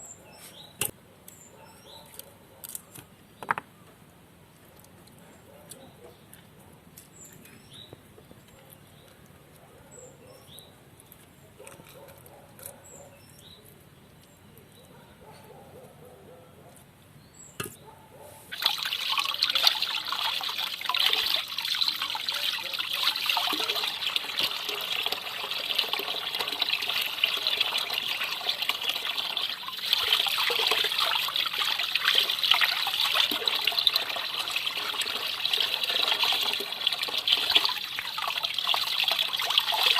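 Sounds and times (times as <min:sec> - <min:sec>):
water running in a stream: 0:18.5 - 0:39.9.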